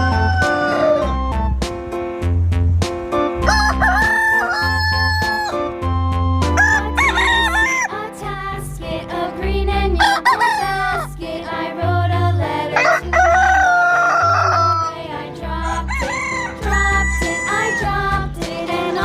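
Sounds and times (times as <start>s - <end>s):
rooster crowing: 0.0s - 1.2s, 3.4s - 5.6s, 6.6s - 7.9s, 10.0s - 10.8s, 12.8s - 15.0s, 15.6s - 17.9s
music with bass beat: 0.0s - 7.6s.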